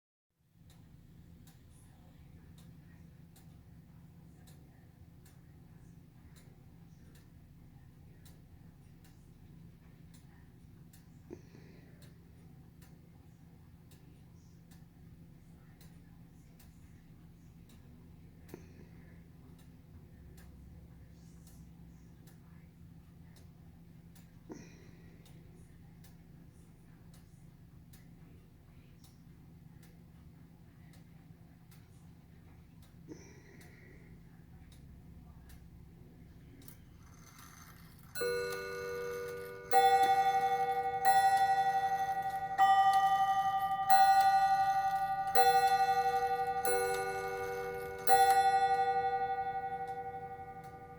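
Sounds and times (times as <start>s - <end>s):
clock ticking faintly: 36.6s - 50.9s.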